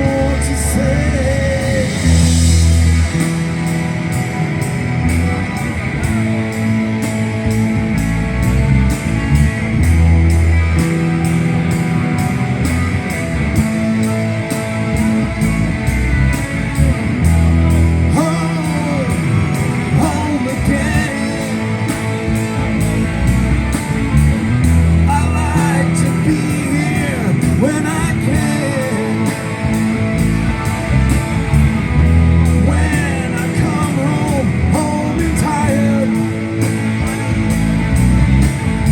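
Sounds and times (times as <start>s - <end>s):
person singing: 0.0s - 3.2s, 17.8s - 22.6s, 25.0s - 30.1s, 32.4s - 37.0s
bass guitar: 0.0s - 38.9s
electric guitar: 0.0s - 38.9s
drum kit beat: 0.8s - 38.9s.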